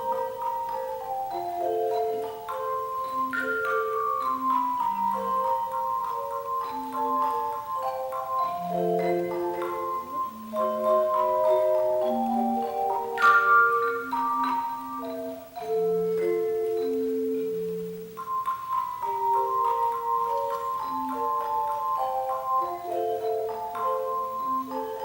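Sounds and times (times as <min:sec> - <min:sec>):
chime bars playing a melody: 0:00.0 - 0:25.0.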